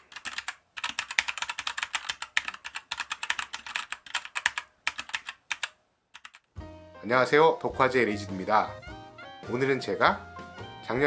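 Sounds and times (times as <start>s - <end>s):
mechanical keyboard key clacks: 0.0s - 6.5s.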